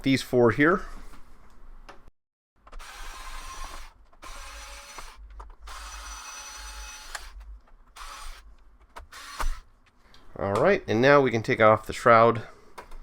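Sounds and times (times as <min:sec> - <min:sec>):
electric screwdriver whirring: 0:02.7 - 0:09.7.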